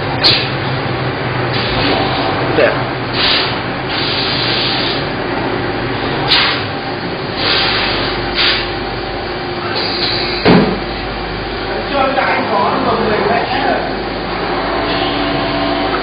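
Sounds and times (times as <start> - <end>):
machine hum: 0.0 - 16.0
short hissing surges: 3.1 - 5.1, 7.3 - 8.7, 9.6 - 10.4
sharp knock: 10.4 - 10.8.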